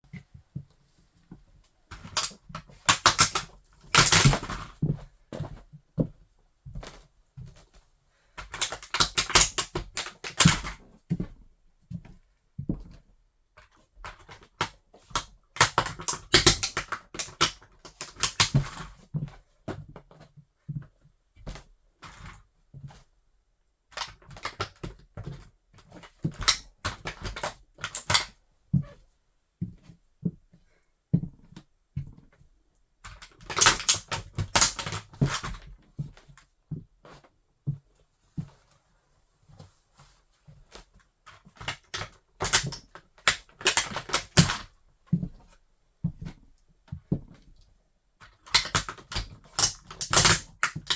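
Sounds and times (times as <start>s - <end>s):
toy car crunching and cracking: 2.0s - 4.6s, 8.6s - 10.7s, 15.2s - 18.7s, 26.4s - 28.3s, 33.4s - 35.5s, 41.7s - 44.6s, 48.5s - 50.9s.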